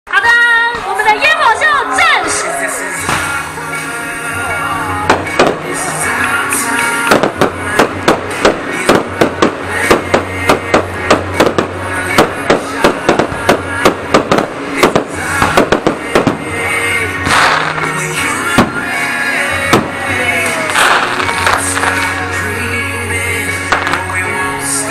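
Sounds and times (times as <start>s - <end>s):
music with steady bass: 1.4s - 24.9s
fireworks bangs: 5.0s - 22.4s, 23.5s - 24.3s.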